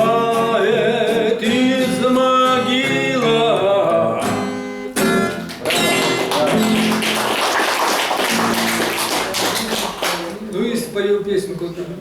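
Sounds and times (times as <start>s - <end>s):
man singing: 0.0s - 4.5s
acoustic guitar strumming: 0.0s - 7.4s, 8.0s - 10.4s.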